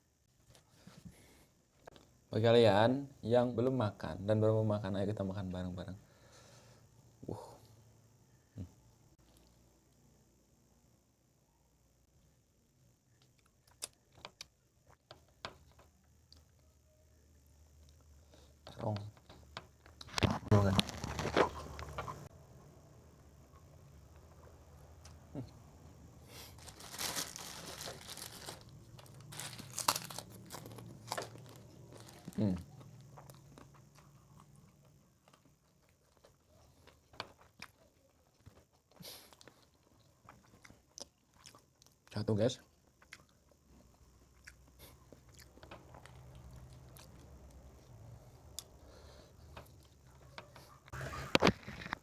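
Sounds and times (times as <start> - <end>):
chewing crispy food: 19.9 - 22.2, 26.3 - 52.0.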